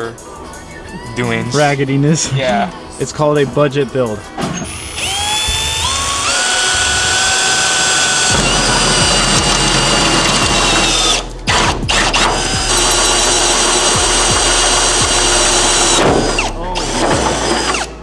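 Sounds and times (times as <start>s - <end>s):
power drill running: 4.4s - 18.0s.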